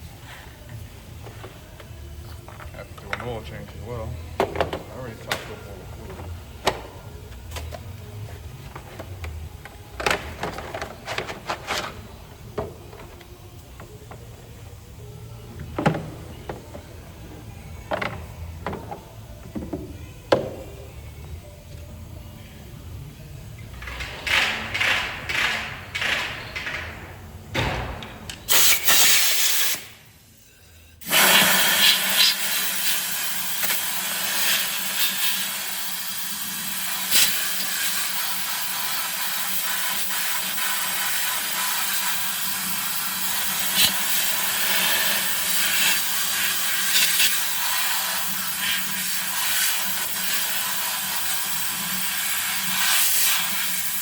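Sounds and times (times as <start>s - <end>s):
irregular clatter and knocks: 23.7s - 28.5s
steady loud hiss: 26.6s - 30.4s, 31.0s - 54.0s.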